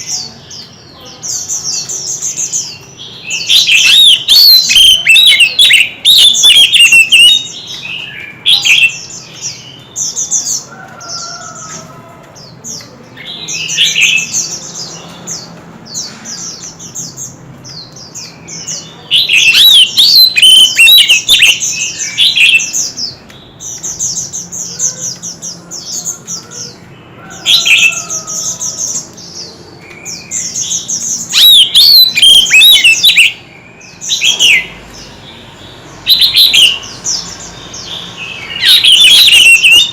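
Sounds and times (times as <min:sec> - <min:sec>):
bird singing whistled phrases: 0:03.2 - 0:09.1, 0:18.7 - 0:22.9, 0:30.0 - 0:33.4, 0:36.1 - 0:36.8, 0:38.4 - 0:39.9.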